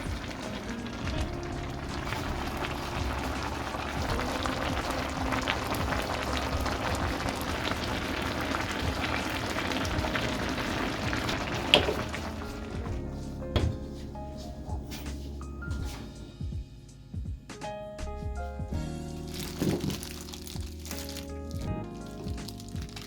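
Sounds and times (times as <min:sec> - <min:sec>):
food bubbling and crackling: 0:00.0 - 0:14.1, 0:19.2 - 0:23.0.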